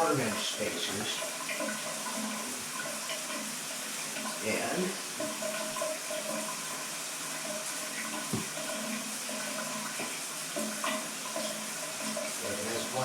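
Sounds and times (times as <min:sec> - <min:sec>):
shower spray hissing: 0:11.9 - 0:13.0.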